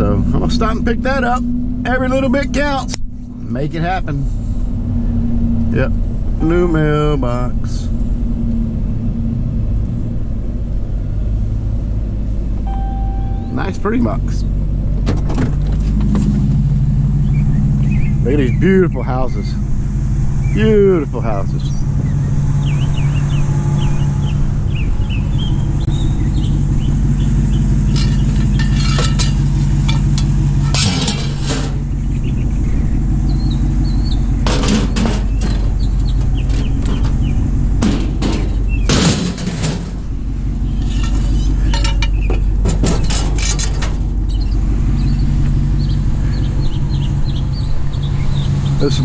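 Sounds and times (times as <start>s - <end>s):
pickup truck engine running: 0.0s - 49.0s
loose metal rattling: 25.8s - 46.5s.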